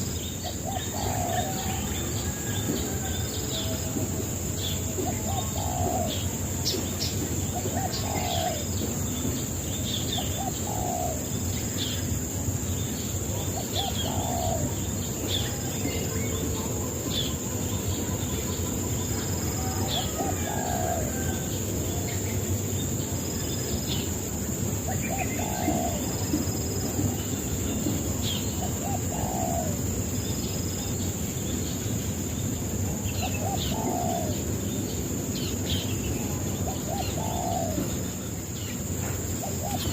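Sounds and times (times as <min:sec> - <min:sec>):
bird low call: 0:24.8 - 0:30.5, 0:32.8 - 0:39.9.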